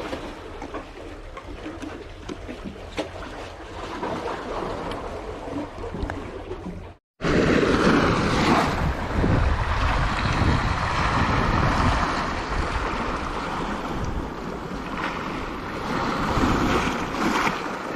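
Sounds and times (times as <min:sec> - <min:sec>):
sea waves washing: 0:03.6 - 0:17.9
wind buffeting microphone: 0:07.2 - 0:17.6.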